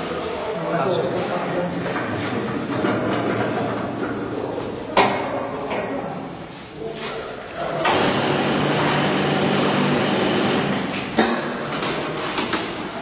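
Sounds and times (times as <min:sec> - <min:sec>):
machine humming: 0:07.8 - 0:12.0.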